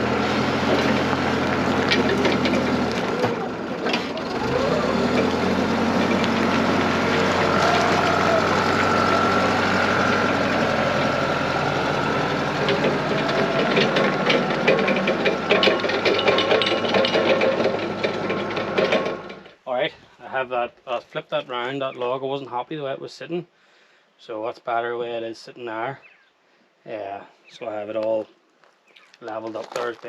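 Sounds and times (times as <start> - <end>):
forklift engine running: 0.0 - 19.6.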